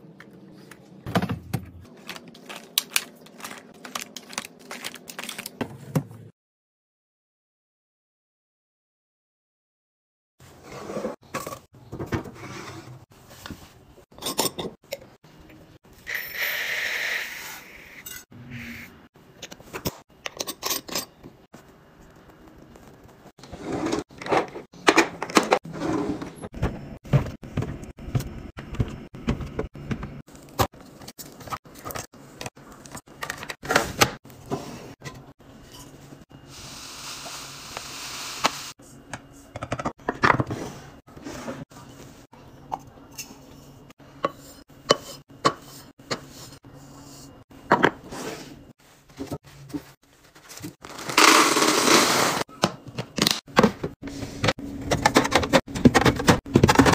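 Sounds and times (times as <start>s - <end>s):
rustling or pouring: 2.0s - 5.5s.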